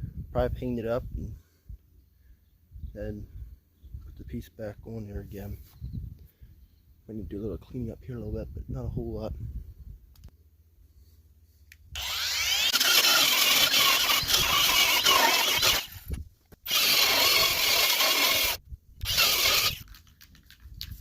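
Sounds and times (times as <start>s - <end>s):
angle grinder grinding steel: 12.0s - 19.9s.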